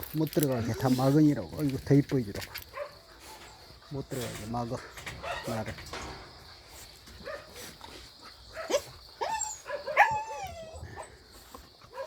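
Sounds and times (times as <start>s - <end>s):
dogs whining and yelping: 8.4s - 12.0s.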